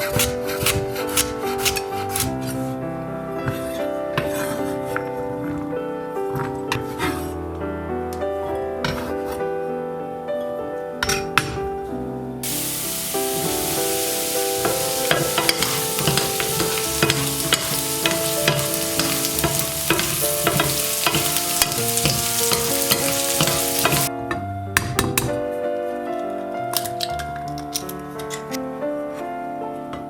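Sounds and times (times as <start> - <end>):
food sizzling in oil: 12.4 - 24.1
utensil scraping a pan: 12.4 - 24.1.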